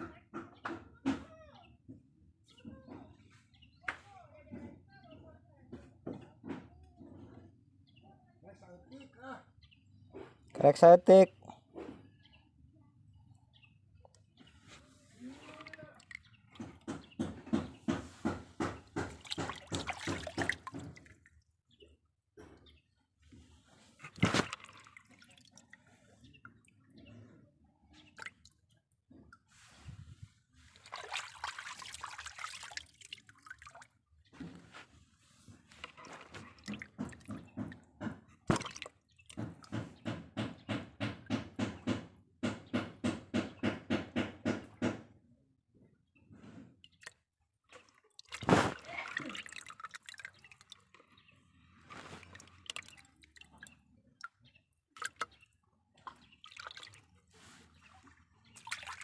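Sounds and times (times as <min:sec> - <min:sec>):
water splashing: 0:19.0 - 0:21.3, 0:24.0 - 0:26.2, 0:30.7 - 0:33.9, 0:38.5 - 0:39.5, 0:47.7 - 0:54.4, 0:55.0 - 0:59.0.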